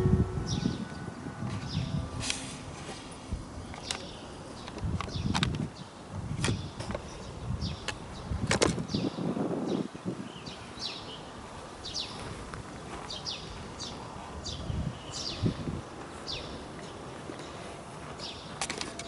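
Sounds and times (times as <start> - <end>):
wind rumble on microphone: 0.0 - 16.7
small birds chirping: 3.5 - 19.0.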